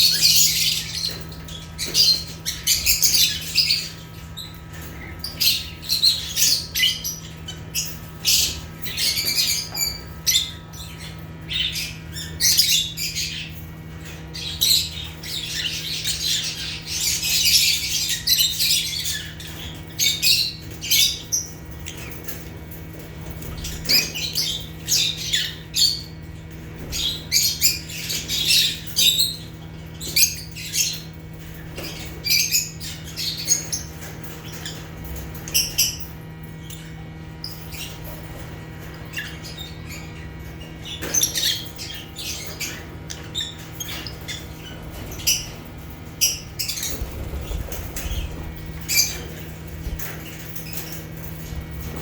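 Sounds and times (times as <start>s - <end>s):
lovebirds chirping and squawking: 0.0s - 52.0s
steady low hum: 34.0s - 52.0s.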